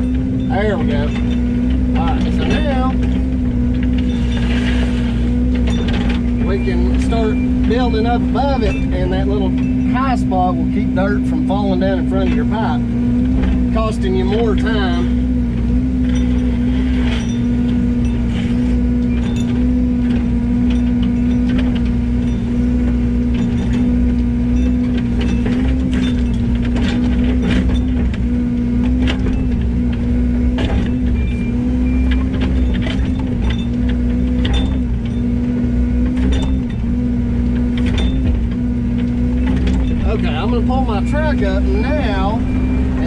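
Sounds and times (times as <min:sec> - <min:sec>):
machine knocks and clanks: 0:00.0 - 0:04.8, 0:05.4 - 0:10.5, 0:19.0 - 0:40.6
excavator diesel engine running: 0:00.0 - 0:43.0.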